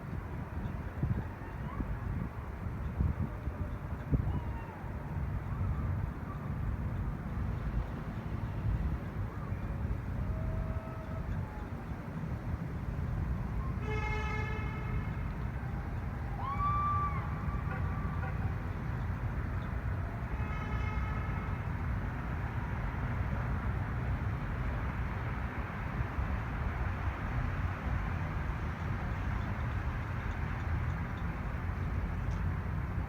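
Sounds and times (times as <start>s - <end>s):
low traffic rumble: 0.0s - 33.0s
car horn blast: 13.8s - 15.2s.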